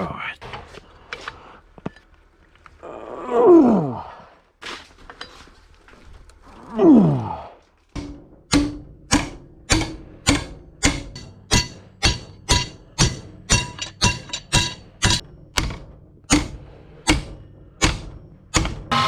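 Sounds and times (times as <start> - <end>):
hammer on steel: 8.0 - 19.0.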